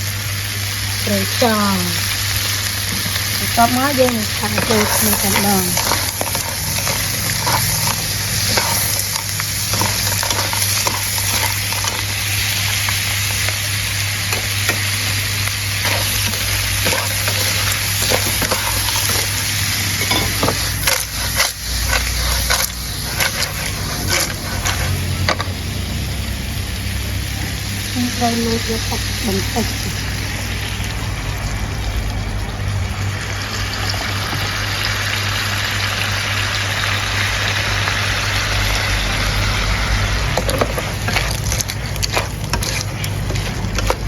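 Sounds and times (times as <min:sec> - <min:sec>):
shellfish sizzling in a pan: 0:00.0 - 0:44.0
spatula scraping and tapping pan: 0:04.4 - 0:12.2, 0:15.8 - 0:25.6, 0:40.4 - 0:44.0.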